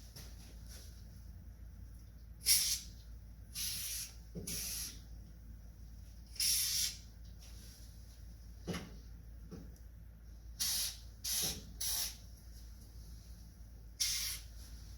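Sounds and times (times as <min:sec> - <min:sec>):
aerosol can spraying: 0:02.4 - 0:02.9, 0:03.6 - 0:05.0, 0:10.6 - 0:12.2, 0:14.0 - 0:14.5.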